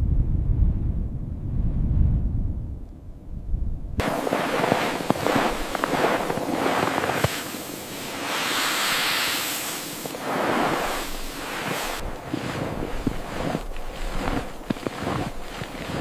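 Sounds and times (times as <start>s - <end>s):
gusting wind: 0.0s - 16.0s
crackles and snaps: 4.0s - 8.5s, 9.5s - 16.0s.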